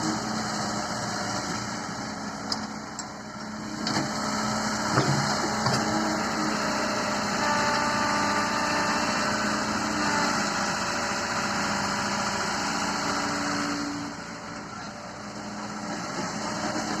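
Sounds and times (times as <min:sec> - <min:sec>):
heavy machine engine running: 0:00.0 - 0:17.0.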